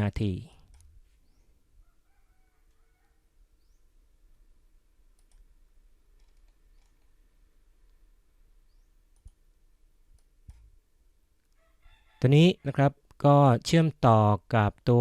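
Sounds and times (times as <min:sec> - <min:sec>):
computer mouse clicks: 0:05.1 - 0:07.2, 0:09.1 - 0:09.4, 0:10.1 - 0:10.7.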